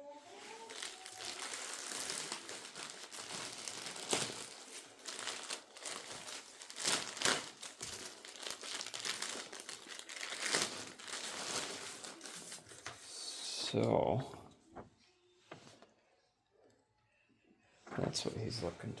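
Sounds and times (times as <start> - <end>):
packaging rustling and crackling: 0.3 - 13.1.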